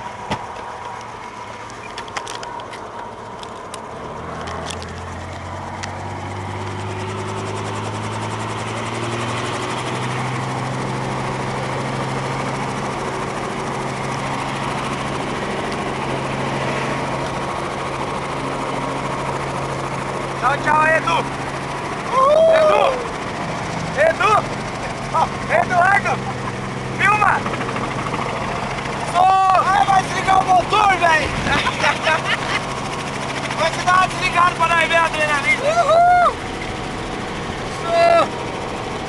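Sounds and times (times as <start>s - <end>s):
helicopter engine and rotor: 0.0s - 39.0s
sharp clicks: 0.4s - 6.0s.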